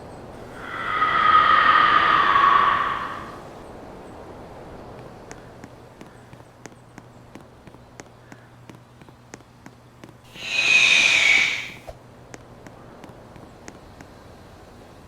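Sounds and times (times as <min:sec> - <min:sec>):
loud hiss: 0:00.5 - 0:03.5, 0:10.3 - 0:11.9.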